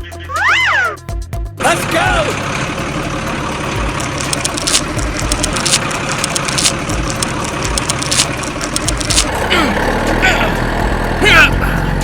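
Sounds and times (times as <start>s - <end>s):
engine running: 0.0s - 12.0s
clicks and low knocks: 3.7s - 9.4s.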